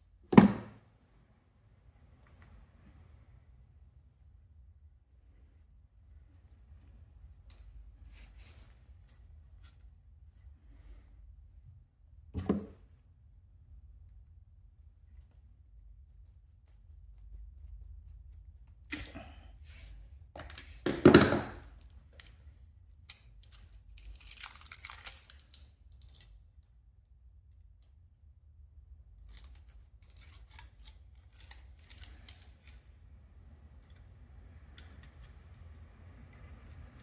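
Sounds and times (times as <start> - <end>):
rustling tearing sound: 23.1 - 26.2, 29.3 - 32.8.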